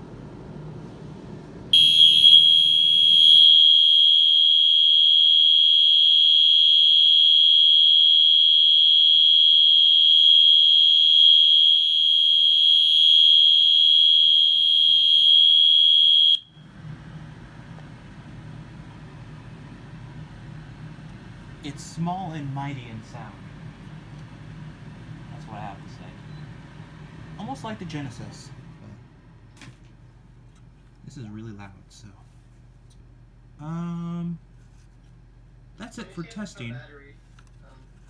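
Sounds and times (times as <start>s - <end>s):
high-pitched horn steady tone: 1.8s - 16.6s.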